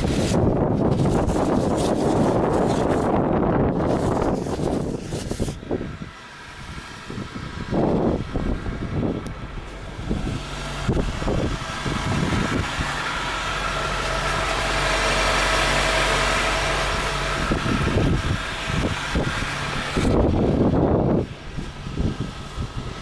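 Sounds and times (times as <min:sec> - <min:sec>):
car engine idling: 0:00.0 - 0:23.0
short rough engine noises: 0:00.0 - 0:23.0.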